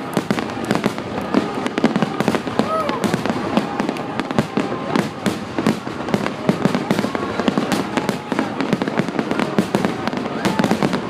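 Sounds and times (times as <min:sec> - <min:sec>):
faint crowd voices: 0:00.0 - 0:11.0
fireworks bursting and crackling: 0:00.0 - 0:11.0.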